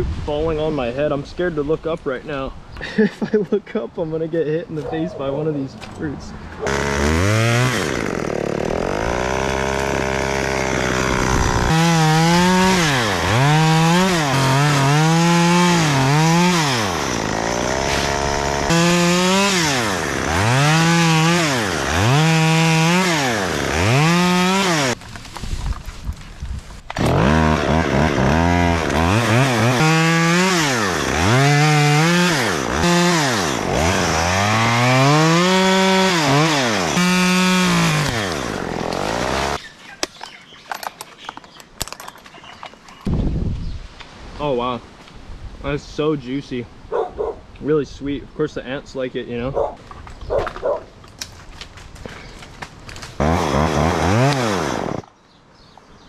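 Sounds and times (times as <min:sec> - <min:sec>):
chainsaw cutting wood: 0:06.6 - 0:26.2, 0:26.8 - 0:41.0, 0:50.2 - 0:55.2.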